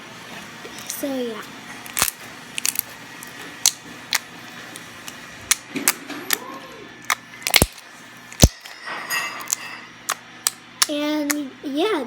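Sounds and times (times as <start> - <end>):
slime squishing clicks and pops: 1.9 - 2.8, 7.0 - 7.8, 8.4 - 8.7.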